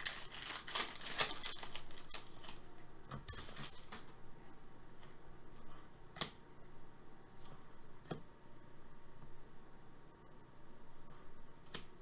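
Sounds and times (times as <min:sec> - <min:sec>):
trading cards being handled: 0:00.0 - 0:04.1.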